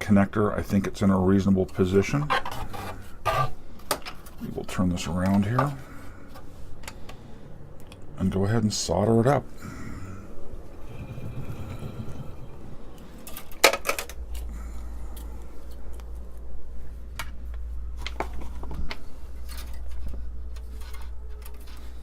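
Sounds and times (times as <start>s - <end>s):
low steady hum: 0.0s - 22.0s
clicks and clatter of tools: 13.2s - 16.1s, 18.0s - 22.0s.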